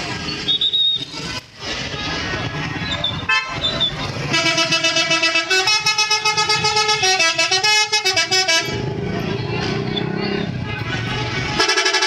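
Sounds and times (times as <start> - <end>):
multi-tone air horn melody: 3.3 - 3.6, 4.2 - 8.8, 10.4 - 12.0.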